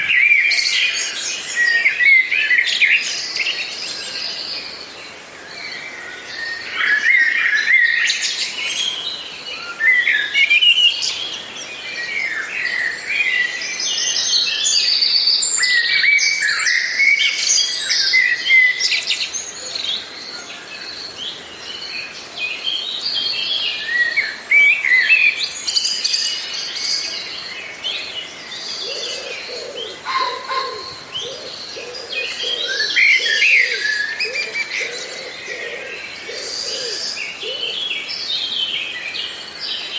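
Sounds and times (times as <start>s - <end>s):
songbirds chirping and trilling: 0.0s - 39.9s
low cooing call: 28.8s - 37.9s.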